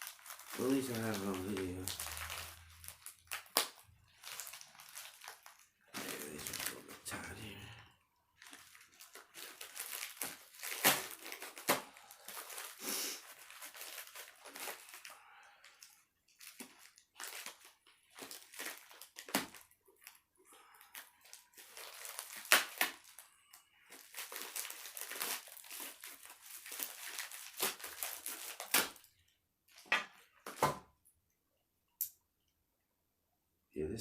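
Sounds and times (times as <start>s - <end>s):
packaging crinkling and tearing: 0.0s - 7.7s, 8.4s - 29.8s.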